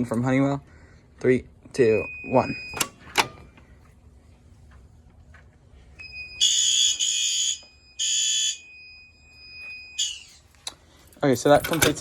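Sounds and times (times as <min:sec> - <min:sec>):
steady high beep: 0:01.8 - 0:02.8
fire alarm horn blasts: 0:02.0 - 0:03.0, 0:06.0 - 0:10.4
fire alarm pull station click: 0:02.6 - 0:03.4.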